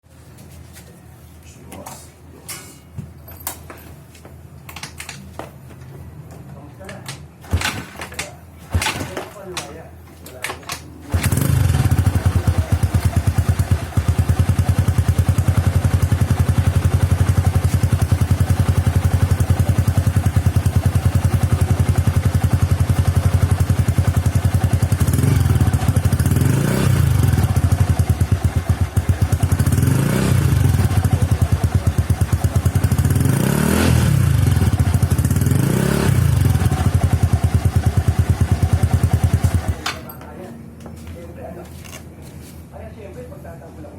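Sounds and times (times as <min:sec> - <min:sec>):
scooter engine idling and revving: 0:11.1 - 0:39.8.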